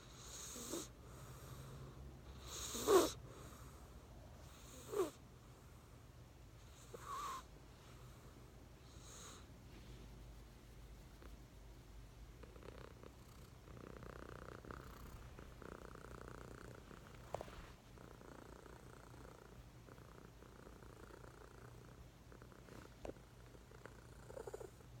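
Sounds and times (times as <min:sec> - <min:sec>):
cat snoring: 0:00.0 - 0:03.8, 0:04.4 - 0:05.2, 0:06.6 - 0:08.0, 0:08.8 - 0:09.5, 0:12.4 - 0:24.9.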